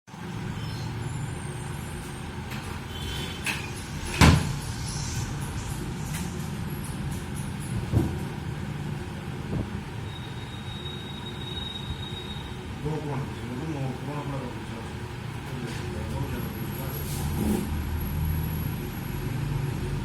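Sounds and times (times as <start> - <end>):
low rumble: 3.7 - 9.9.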